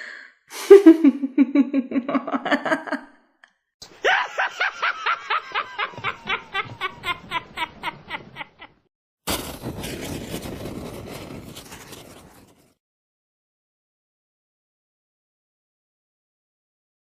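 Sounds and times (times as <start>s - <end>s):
high-pitched cackle: 3.9s - 8.8s
low pulsing evil laugh: 4.0s - 8.8s.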